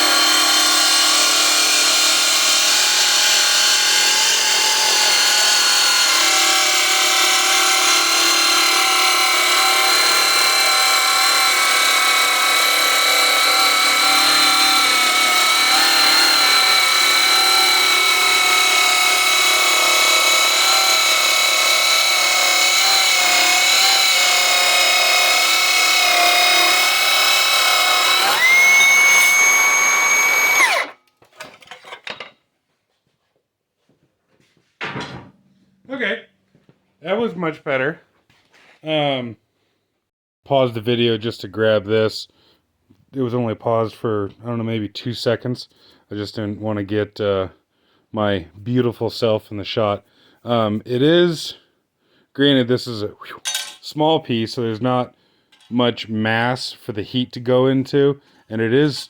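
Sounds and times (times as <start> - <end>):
circular saw cutting steel: 0.0 - 31.0.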